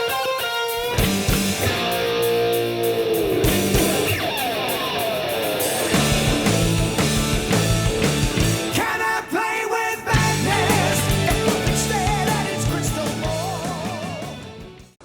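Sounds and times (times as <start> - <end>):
rock music with electric guitar: 0.0 - 15.0
person singing: 8.7 - 14.5.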